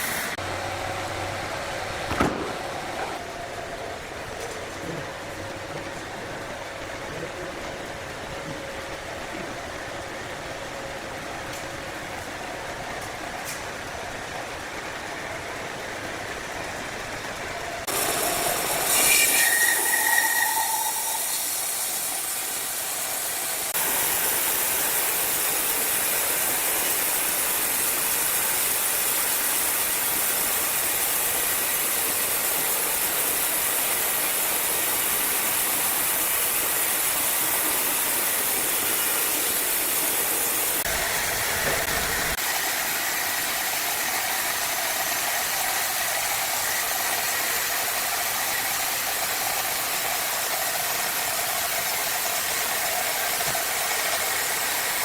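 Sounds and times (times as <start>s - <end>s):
saw machine cutting wood: 0.0s - 0.4s, 17.8s - 30.5s
brief machine whine: 17.9s - 22.8s.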